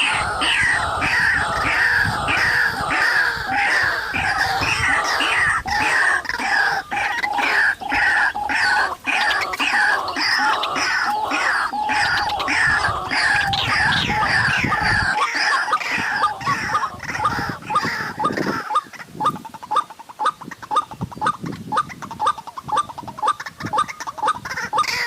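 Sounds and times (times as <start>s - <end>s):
waterhens calling: 0.0s - 25.0s.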